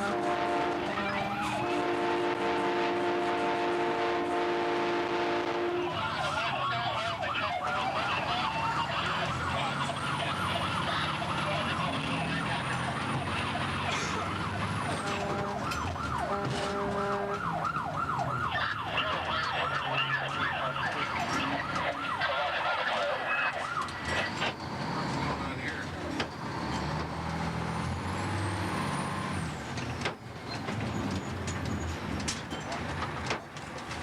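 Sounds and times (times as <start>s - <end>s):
multi-note train horn: 0.0s - 6.0s, 14.9s - 17.6s
electronic siren yelp: 7.0s - 11.8s, 12.6s - 24.3s.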